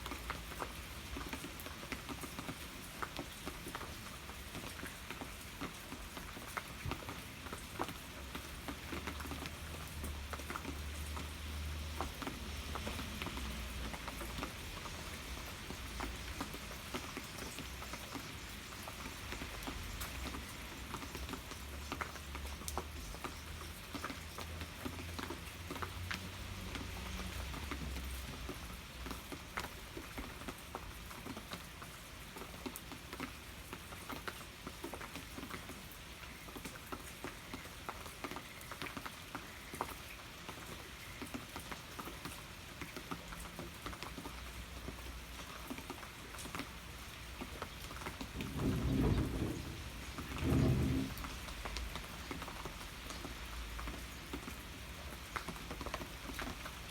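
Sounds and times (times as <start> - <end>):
rain drops ticking on surface: 0.0 - 56.9
low rumble: 48.5 - 51.3.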